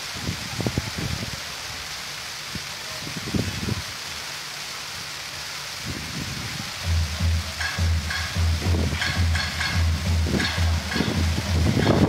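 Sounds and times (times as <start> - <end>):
electronic firecrackers crackling: 6.8 - 12.0
pulsing bass music: 6.8 - 12.0
low thuds: 6.9 - 12.0.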